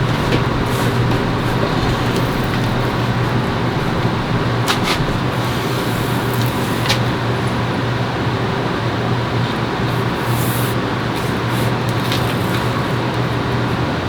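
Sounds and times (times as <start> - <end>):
mechanical hum and rushing: 0.0 - 8.8.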